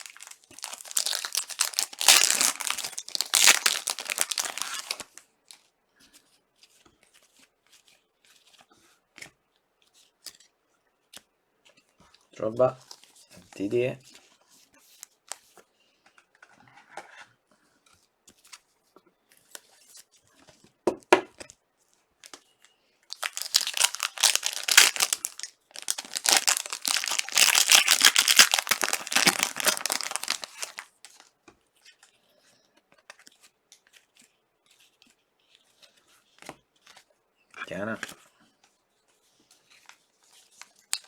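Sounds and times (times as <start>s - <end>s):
wrapper tearing and crinkling: 0.0s - 5.2s, 23.1s - 31.3s.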